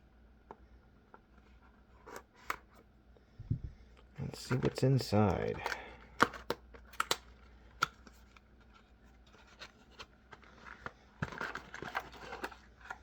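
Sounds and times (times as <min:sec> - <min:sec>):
packaging rustling: 0:04.3 - 0:13.0.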